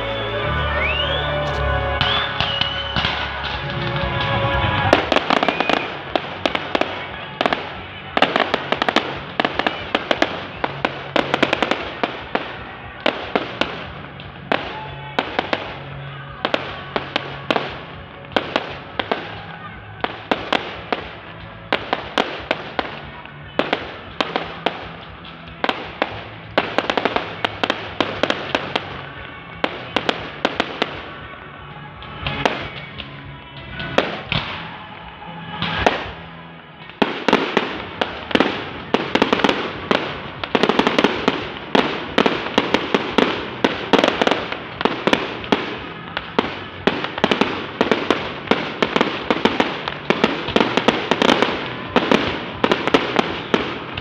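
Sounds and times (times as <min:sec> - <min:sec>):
music playing: 0:00.0 - 0:06.6
fireworks bangs and crackles: 0:00.0 - 0:54.0.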